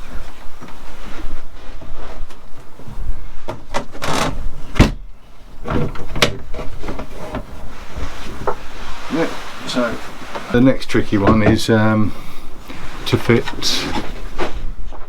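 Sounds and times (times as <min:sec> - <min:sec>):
knocks and clunks on boat hatch: 0:03.5 - 0:07.6, 0:11.2 - 0:11.6.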